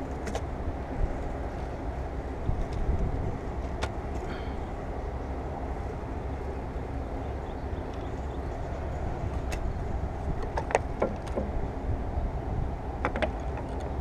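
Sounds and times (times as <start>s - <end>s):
low background rumble: 0.0s - 14.0s
light clicks and knocks: 10.4s - 11.6s, 13.0s - 14.0s.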